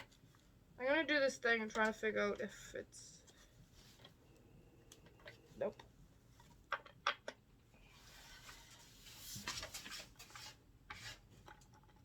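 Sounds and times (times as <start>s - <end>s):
plastic parts clicking and knocking: 4.9s - 7.7s, 11.2s - 12.0s.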